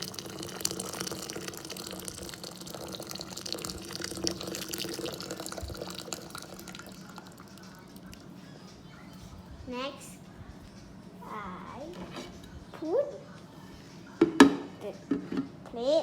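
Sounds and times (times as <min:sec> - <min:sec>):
water pouring into glass jar: 0:00.0 - 0:08.3.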